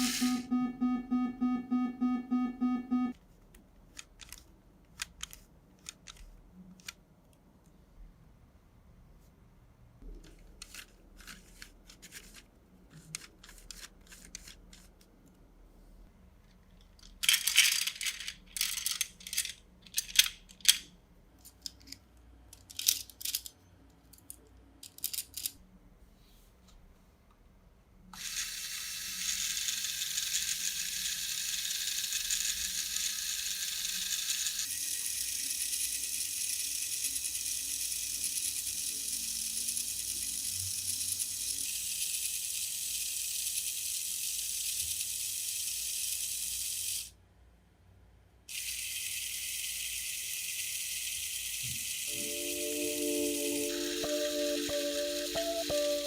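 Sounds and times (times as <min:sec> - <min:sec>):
plastic parts clicking and rattling: 0:03.9 - 0:07.0, 0:10.2 - 0:15.0, 0:16.5 - 0:25.6.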